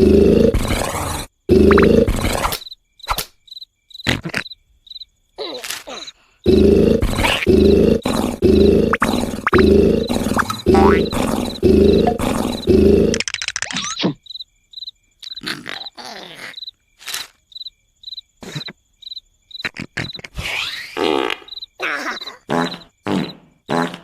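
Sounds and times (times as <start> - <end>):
cartoon snoring: 0.0 - 2.6, 5.9 - 13.3, 22.0 - 24.0
vocal noises: 0.0 - 2.6, 5.4 - 14.2, 15.2 - 17.2, 19.6 - 24.0
cricket chirping: 0.0 - 24.0.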